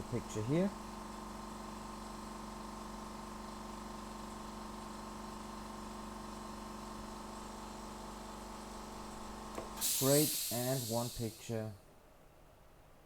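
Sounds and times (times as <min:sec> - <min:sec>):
steady machine hum: 0:08.4 - 0:11.7
faint hiss: 0:09.8 - 0:11.8.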